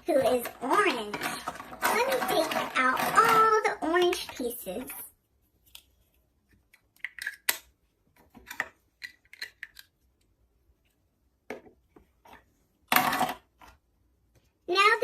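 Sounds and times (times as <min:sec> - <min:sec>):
plastic blocks clicking together: 0:00.1 - 0:04.4, 0:06.7 - 0:07.7, 0:08.4 - 0:10.0.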